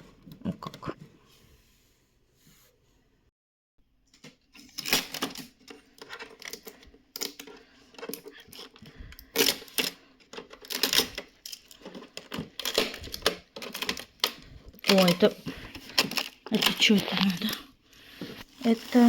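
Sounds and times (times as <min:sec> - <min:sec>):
plastic parts clicking: 0:04.2 - 0:17.7
plastic wrap crackling: 0:10.7 - 0:19.0.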